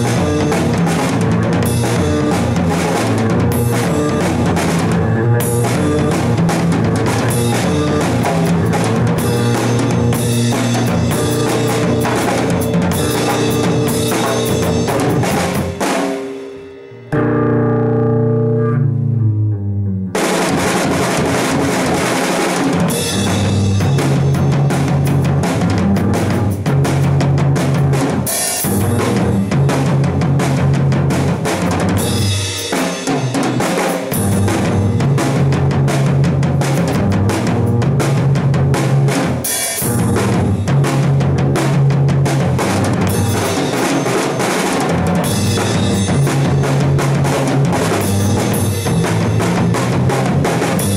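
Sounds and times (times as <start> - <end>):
music with drum kit beat: 0.0 - 19.0, 20.0 - 50.9
muffled held notes: 3.4 - 20.1.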